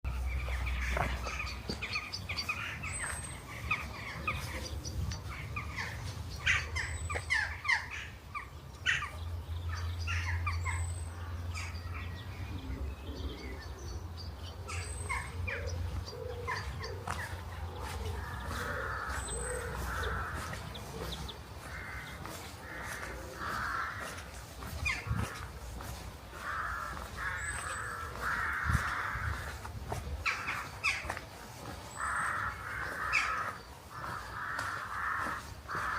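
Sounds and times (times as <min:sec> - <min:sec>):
small birds chirping: 0:00.1 - 0:35.9
crows cawing: 0:00.3 - 0:04.7, 0:14.7 - 0:35.9.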